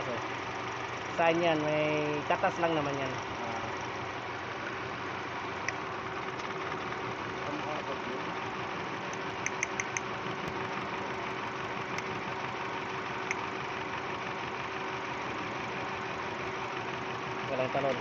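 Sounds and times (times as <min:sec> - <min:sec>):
car engine idling: 0:00.0 - 0:18.0
sharp clicks: 0:09.1 - 0:10.6, 0:11.9 - 0:12.2, 0:13.2 - 0:13.5.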